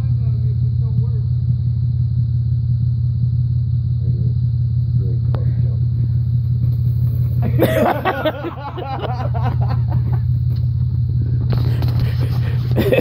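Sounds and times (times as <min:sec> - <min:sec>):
steady low hum: 0:00.0 - 0:13.0
people laughing: 0:07.4 - 0:10.3, 0:11.6 - 0:13.0.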